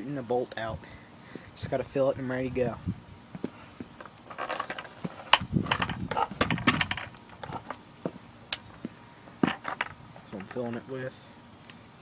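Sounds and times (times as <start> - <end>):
air rifle clicks and clattering: 4.0 - 7.8.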